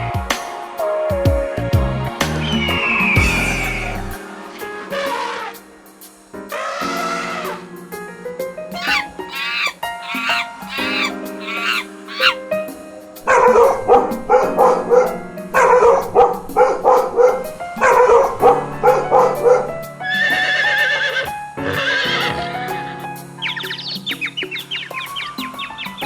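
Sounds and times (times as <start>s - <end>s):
background music: 0.0s - 26.0s
horses whinnying: 6.5s - 7.6s, 8.8s - 12.4s, 20.1s - 22.7s.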